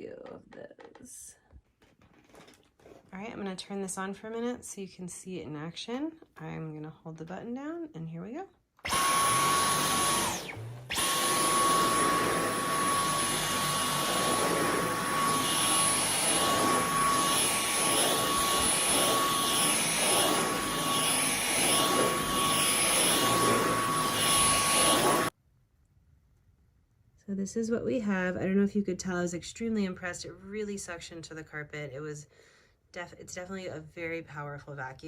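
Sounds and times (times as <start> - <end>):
vacuum cleaner motor whine: 8.8 - 25.3.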